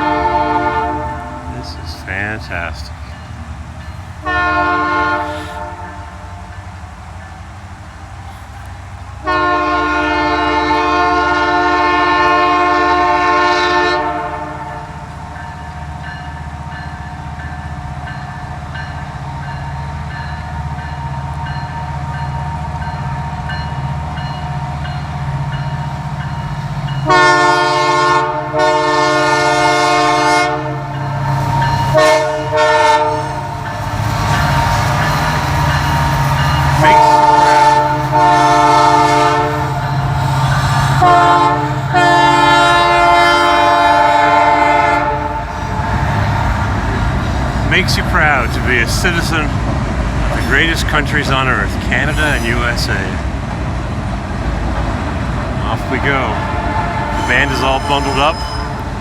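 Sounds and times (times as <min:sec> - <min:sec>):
locomotive air horn blasts: 0:00.0 - 0:01.8, 0:04.2 - 0:06.3, 0:09.2 - 0:15.0, 0:27.0 - 0:33.6, 0:36.6 - 0:40.2, 0:40.9 - 0:45.9, 0:56.0 - 0:58.9
train low rumble: 0:00.0 - 0:59.0.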